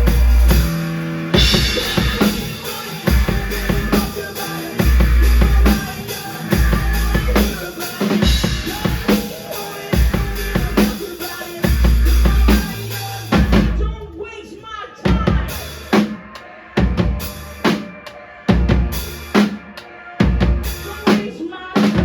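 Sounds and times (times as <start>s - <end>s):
heavy low bass notes: 0.0s - 7.6s, 8.2s - 9.3s, 9.9s - 11.0s, 11.7s - 14.1s, 18.5s - 19.4s
rock band playing: 0.0s - 14.0s, 15.0s - 22.0s.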